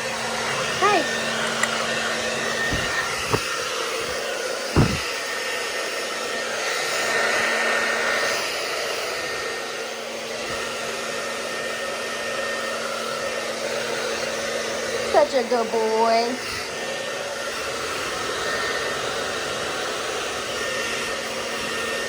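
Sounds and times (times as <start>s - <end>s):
hair dryer blowing: 0.0s - 22.0s
short thumps: 2.6s - 3.5s, 4.1s - 5.1s.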